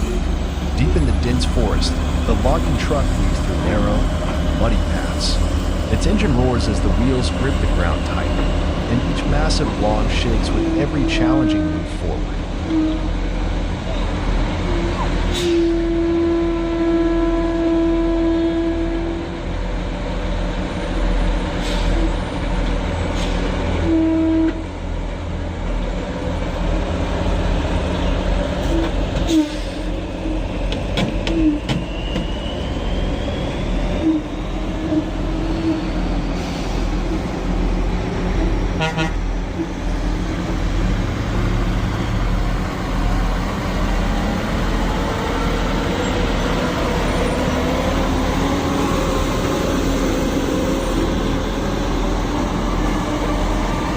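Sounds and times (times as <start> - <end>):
truck horn toots: 23.8 - 24.7, 38.8 - 39.2.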